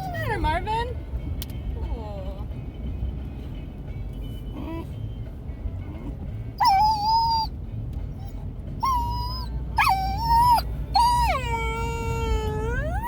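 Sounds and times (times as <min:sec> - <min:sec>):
puppy whining: 0:04.5 - 0:04.9, 0:06.0 - 0:07.5, 0:08.2 - 0:13.0.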